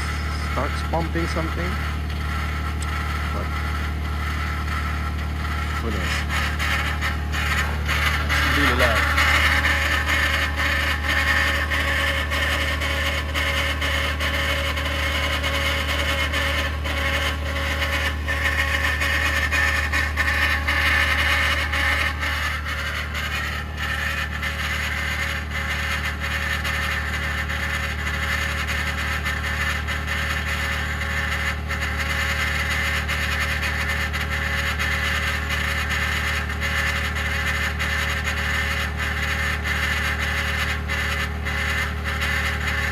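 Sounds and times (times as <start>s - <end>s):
steady low hum: 0.0s - 28.3s
loud grinding cavitating noise: 0.0s - 42.9s.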